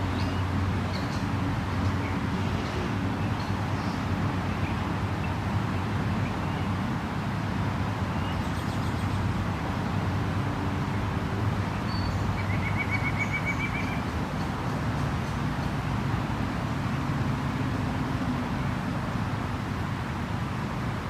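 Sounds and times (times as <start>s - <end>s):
steady outdoor rush: 0.0s - 21.0s
songbird chirping and trilling: 11.8s - 14.1s.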